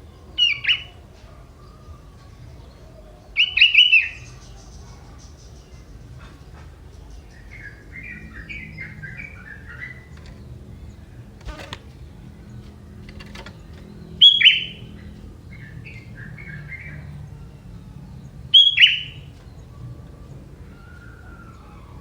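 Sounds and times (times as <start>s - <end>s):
bird chirps: 7.1s - 17.2s, 17.8s - 22.0s.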